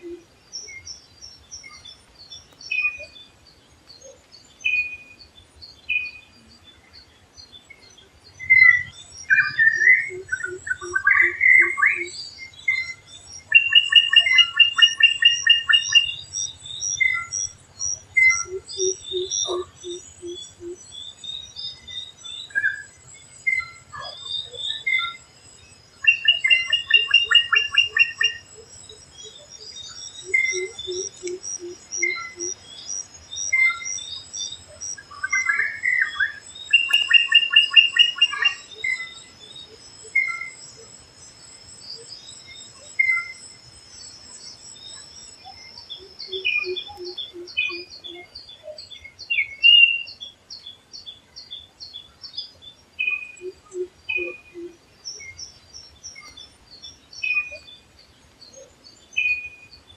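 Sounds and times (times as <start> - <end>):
forest birds chirping: 0.0 - 59.9.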